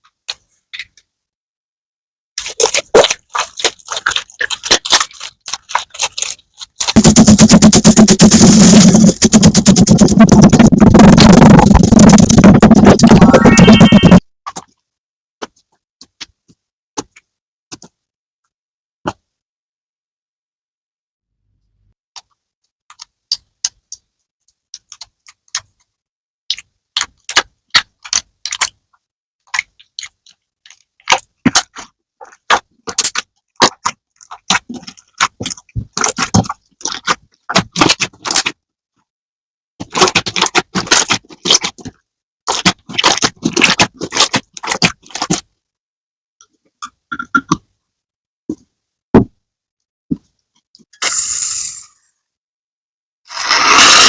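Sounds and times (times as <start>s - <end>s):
slime squeezed by hand: 2.4s - 14.2s, 53.3s - 54.0s.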